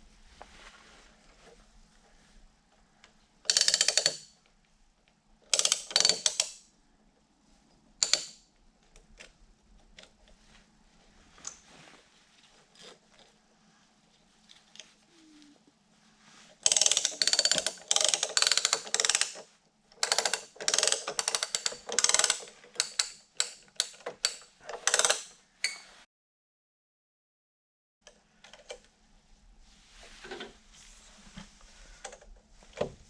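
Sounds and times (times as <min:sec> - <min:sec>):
faint handling sounds: 0:00.0 - 0:03.5, 0:06.8 - 0:18.7, 0:28.1 - 0:33.0
ratchet strap clicking: 0:03.5 - 0:04.4, 0:05.5 - 0:06.7, 0:08.0 - 0:08.4, 0:16.6 - 0:25.3.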